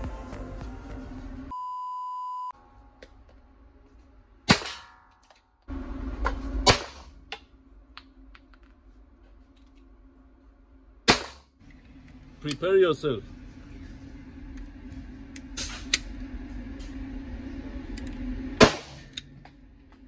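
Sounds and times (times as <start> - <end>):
single-pitch beep: 1.5 - 2.6.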